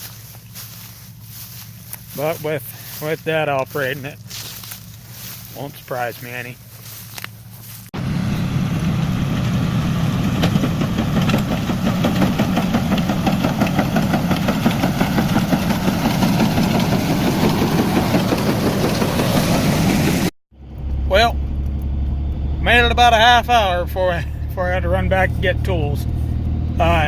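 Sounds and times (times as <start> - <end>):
engine running steadily: 0.0 - 27.0
fine rapid rattle: 10.5 - 19.6.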